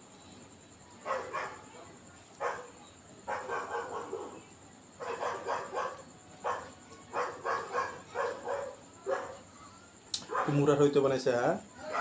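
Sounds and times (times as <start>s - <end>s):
dog barking: 1.0s - 1.8s, 2.4s - 4.4s, 5.0s - 9.4s, 10.3s - 10.7s.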